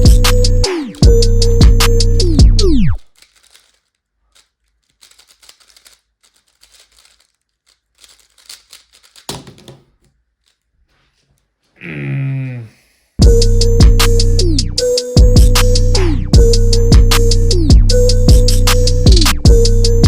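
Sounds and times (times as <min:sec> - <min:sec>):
puzzle cube clack: 0:02.2 - 0:10.1
puzzle cube plastic clicking: 0:02.6 - 0:10.6.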